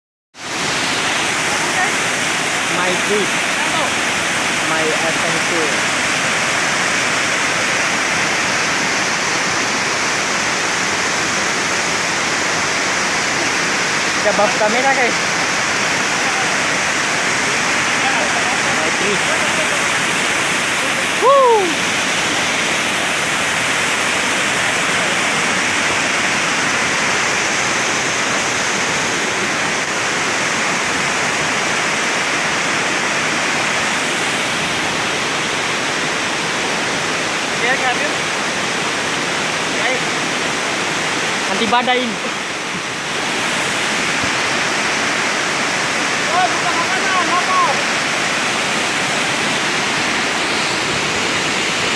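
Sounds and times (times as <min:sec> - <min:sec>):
waterfall rushing: 0:00.4 - 0:51.9.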